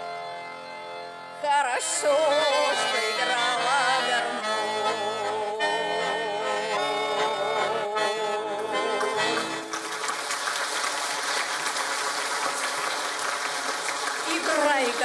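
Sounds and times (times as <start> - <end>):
accordion: 0.0 - 10.1, 14.2 - 15.0
applause: 8.8 - 15.0.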